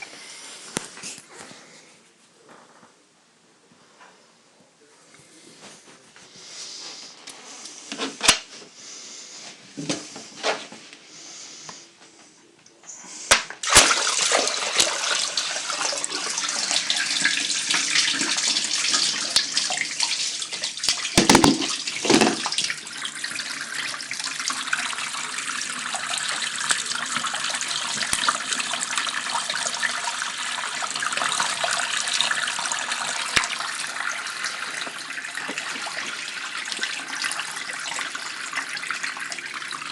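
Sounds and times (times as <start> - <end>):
water running through siphon: 13.6 - 39.9.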